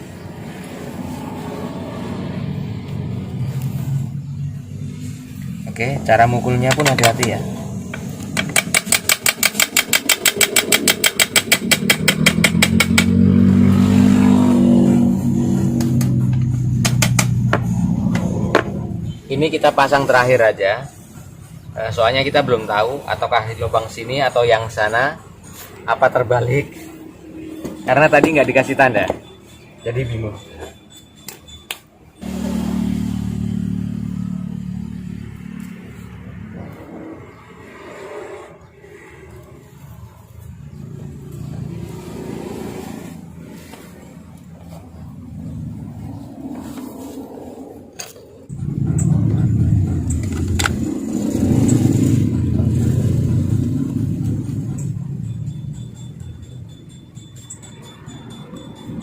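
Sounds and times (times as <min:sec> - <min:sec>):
motor engine running: 0:32.2 - 0:36.1.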